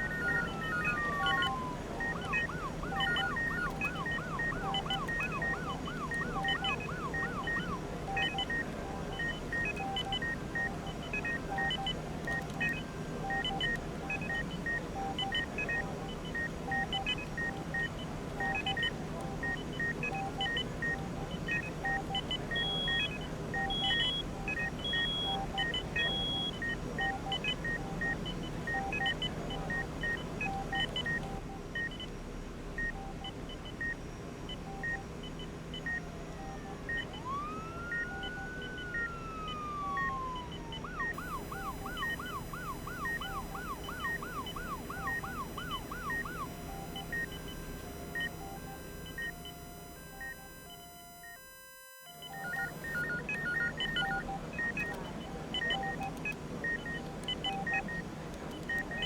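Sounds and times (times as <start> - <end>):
rising siren-like tone: 0.0 - 8.7, 36.0 - 55.9
medical monitors beeping: 0.0 - 32.1, 32.8 - 59.0
higher beeps: 35.8 - 58.0.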